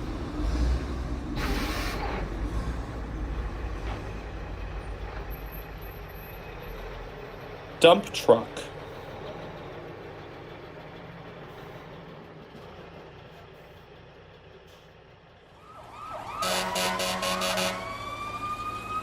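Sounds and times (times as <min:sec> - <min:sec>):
dump truck engine running: 0:00.0 - 0:19.0
siren wail: 0:15.6 - 0:19.0
fire engine horn blast: 0:16.2 - 0:18.7.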